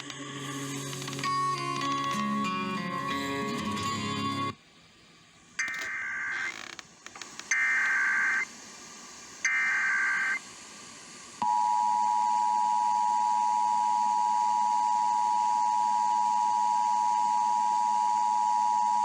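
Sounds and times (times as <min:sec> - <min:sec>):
rapid two-pitch data tones: 0:05.6 - 0:06.6, 0:07.5 - 0:08.5, 0:09.4 - 0:10.4.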